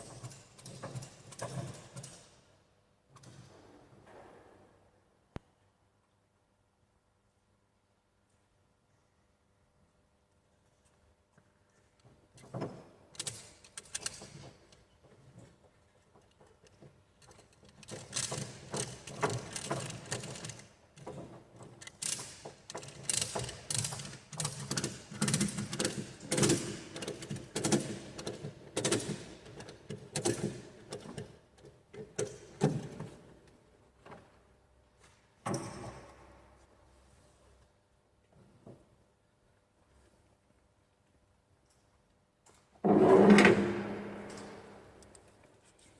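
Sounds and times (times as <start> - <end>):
ratchet strap clicking and rattling: 13.1 - 14.9, 16.0 - 32.7.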